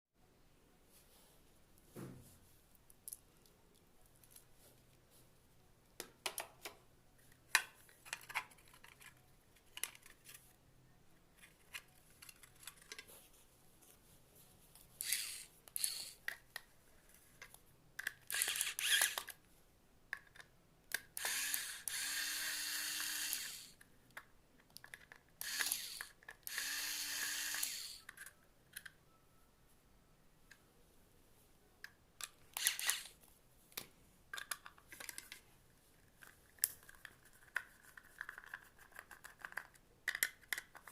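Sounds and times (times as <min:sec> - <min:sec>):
small power tool motor spinning: 0:15.0 - 0:16.2, 0:18.3 - 0:19.2, 0:21.2 - 0:23.8, 0:25.4 - 0:28.0, 0:32.6 - 0:33.1.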